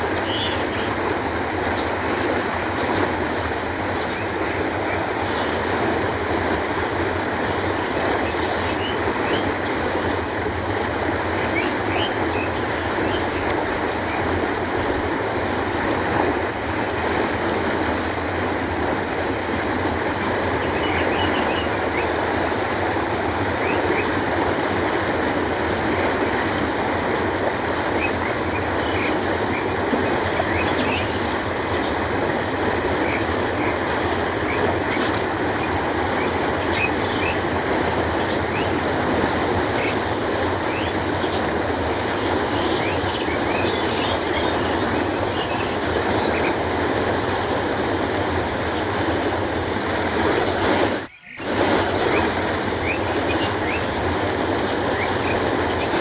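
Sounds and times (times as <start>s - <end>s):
water flowing: 0.0s - 56.0s
faint bird chirps: 51.1s - 51.4s.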